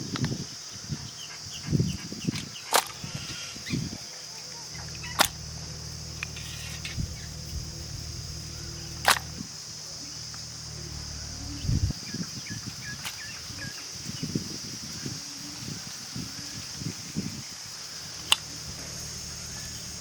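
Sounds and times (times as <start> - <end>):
high-pitched insect drone: 0.0 - 20.0
faint bird chirps: 0.4 - 20.0
low hum: 3.0 - 13.7, 18.2 - 20.0.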